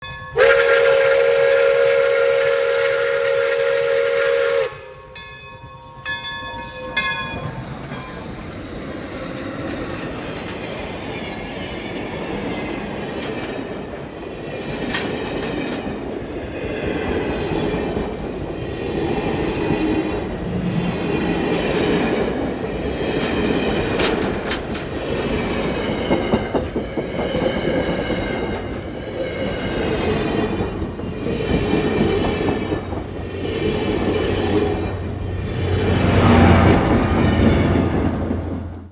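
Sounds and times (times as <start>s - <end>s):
train rumble: 0.0s - 38.9s
steam locomotive whistle: 0.3s - 5.2s, 35.5s - 37.4s
wheels clacking over rail joints: 6.9s - 38.9s.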